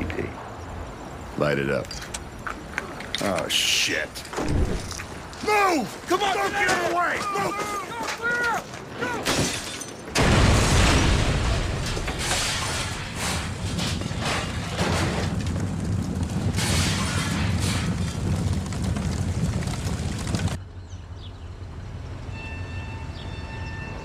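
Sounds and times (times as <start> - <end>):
fire and debris noise: 0.0 - 20.6
heavy rumble: 10.2 - 20.6
large explosion: 10.2 - 20.6.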